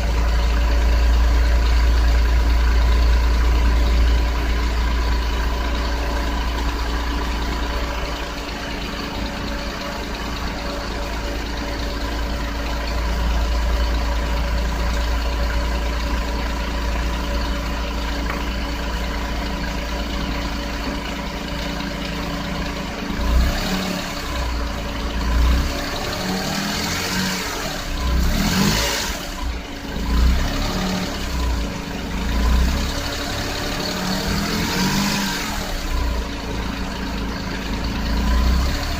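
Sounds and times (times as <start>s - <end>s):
car engine idling with whine: 0.0s - 38.9s.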